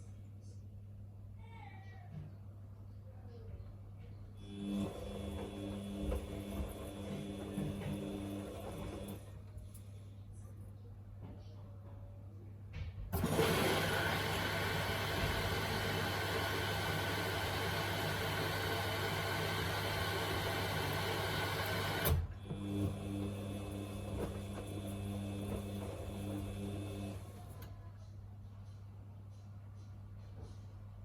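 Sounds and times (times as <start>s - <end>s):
water rushing into washing machine: 4.4s - 9.2s, 13.2s - 27.4s
washing machine motor whine: 4.4s - 9.4s, 13.1s - 27.7s.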